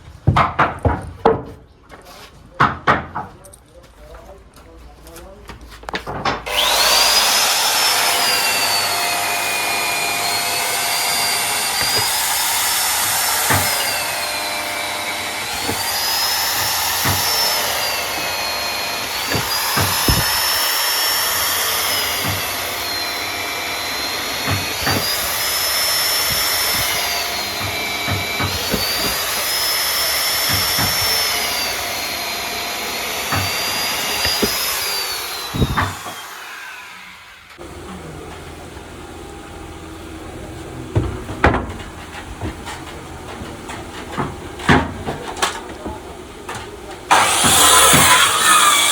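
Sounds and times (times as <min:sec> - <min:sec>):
power tool whining on wood: 0:06.4 - 0:37.7, 0:47.1 - 0:48.9
knocks: 0:19.2 - 0:20.5, 0:24.4 - 0:25.4, 0:30.4 - 0:31.2, 0:33.3 - 0:34.8.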